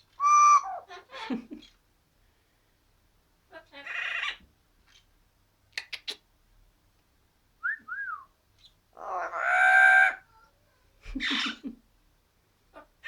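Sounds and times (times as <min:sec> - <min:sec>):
parrot whistles: 0:00.2 - 0:00.8
parrot long loud call: 0:00.2 - 0:01.0, 0:09.0 - 0:10.2.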